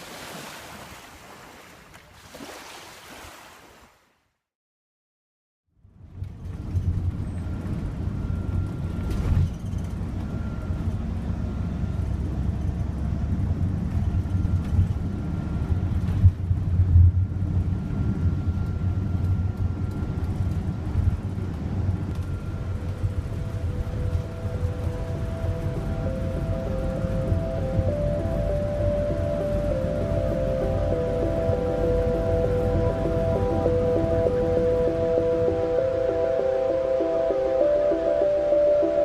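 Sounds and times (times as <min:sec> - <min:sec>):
vehicle engine rumble: 0:05.8 - 0:39.0
music: 0:22.8 - 0:39.0.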